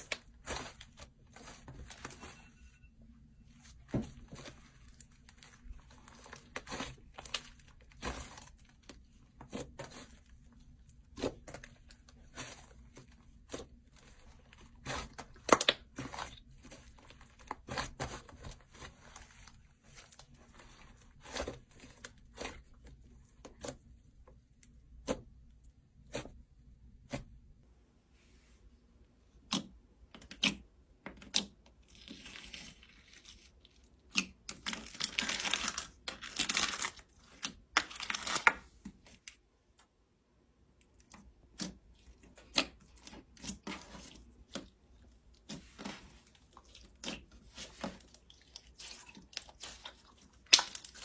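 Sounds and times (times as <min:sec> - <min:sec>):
slime crackling and popping: 0:48.6 - 0:51.0.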